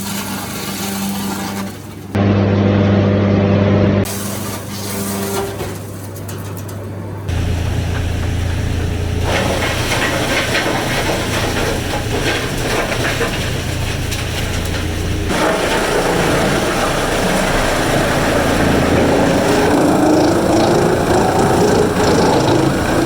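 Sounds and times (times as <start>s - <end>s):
low hum: 2.2s - 4.1s, 7.3s - 23.0s
woodworking machinery running: 6.8s - 23.0s.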